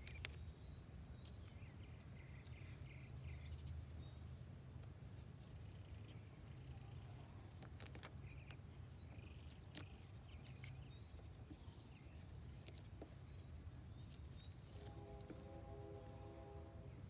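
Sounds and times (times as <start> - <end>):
steady low hum: 13.2 - 17.0.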